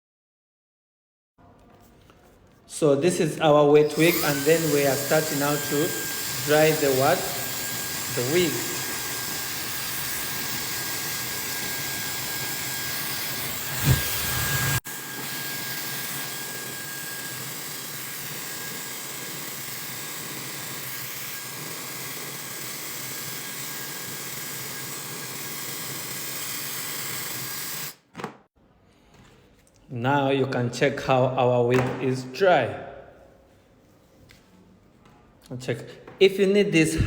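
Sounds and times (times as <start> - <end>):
hair dryer blowing: 3.9 - 28.0.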